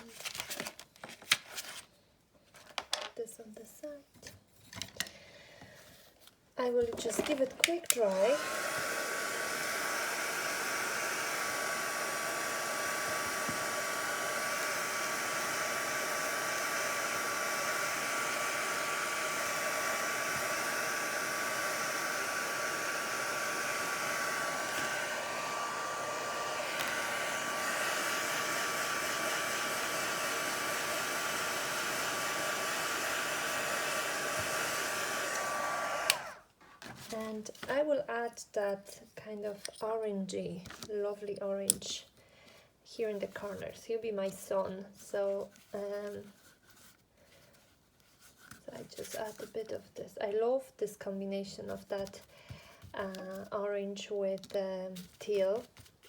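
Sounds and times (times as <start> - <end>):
hot-air dryer blowing: 7.0 - 36.5.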